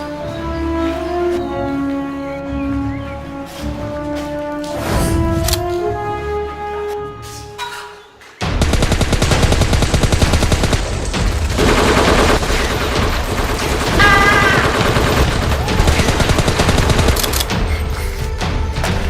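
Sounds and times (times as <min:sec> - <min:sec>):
rapid automatic gunfire: 0:08.4 - 0:17.5.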